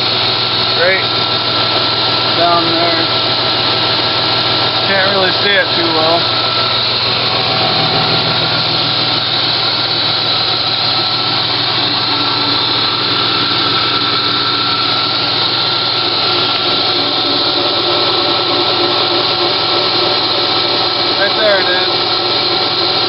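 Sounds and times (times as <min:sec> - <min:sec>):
car engine idling: 0:00.0 - 0:23.0.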